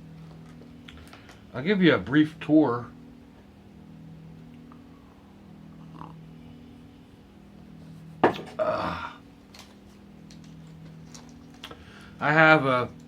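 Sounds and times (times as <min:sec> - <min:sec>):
low steady hum: 0:00.0 - 0:13.0
man burping: 0:08.4 - 0:09.2.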